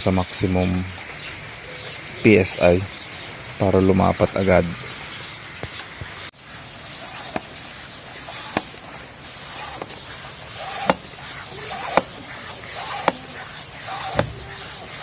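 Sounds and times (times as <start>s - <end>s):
bicycle pump rush of air: 6.4s - 15.0s
bicycle pump click: 6.9s - 15.0s.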